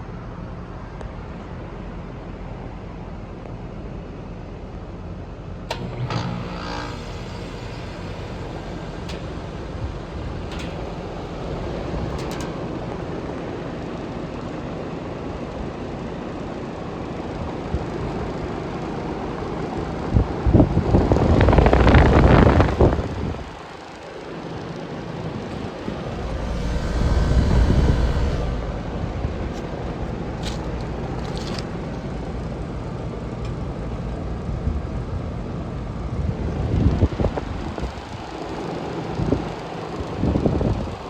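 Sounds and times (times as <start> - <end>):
heat pump humming: 5.5 - 14.0, 24.6 - 32.6
heat pump clicks: 5.7 - 13.1
loud rushing whoosh: 25.5 - 31.2.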